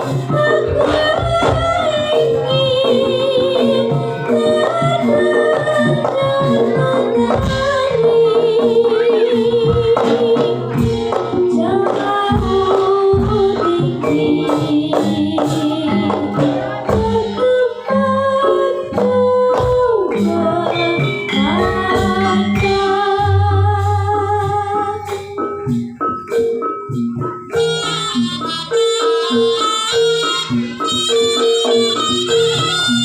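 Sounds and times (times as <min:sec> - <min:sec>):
person singing with wavering notes: 0:00.0 - 0:25.9
drum and percussion strokes: 0:00.0 - 0:33.0.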